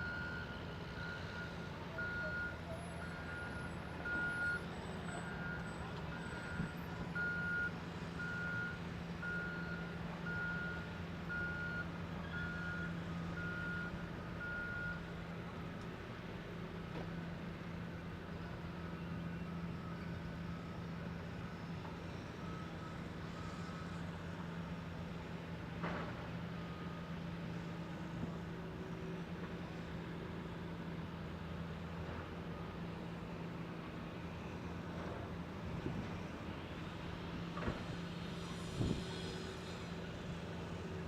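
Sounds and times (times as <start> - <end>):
steady engine hum: 0.0 - 41.0.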